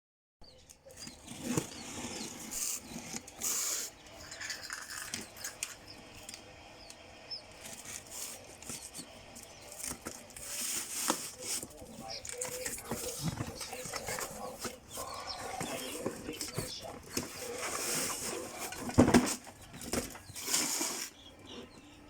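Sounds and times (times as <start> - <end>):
rustling: 7.5 - 21.3.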